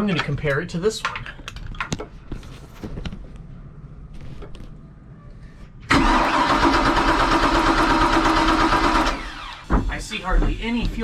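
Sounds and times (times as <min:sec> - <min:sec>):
engine starter cranking: 0:05.9 - 0:09.7.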